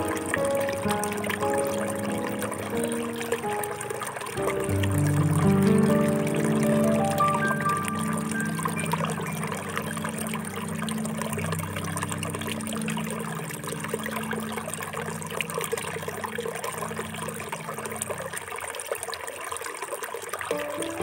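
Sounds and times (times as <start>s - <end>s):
soft background music: 0.0s - 18.5s, 20.5s - 21.0s
water trickling and pouring: 0.0s - 21.0s.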